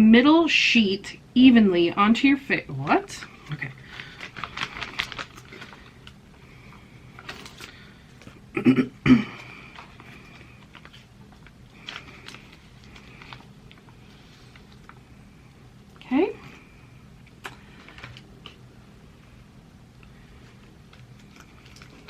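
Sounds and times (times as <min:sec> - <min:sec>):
plastic film crinkling and rustling: 0:03.3 - 0:08.4, 0:09.4 - 0:15.3, 0:17.3 - 0:18.6.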